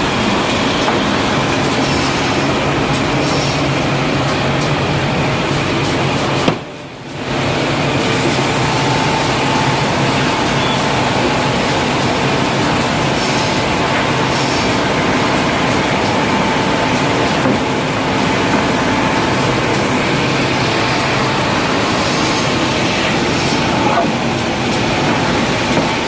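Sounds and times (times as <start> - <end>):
sanding machine running: 7.3 - 26.0.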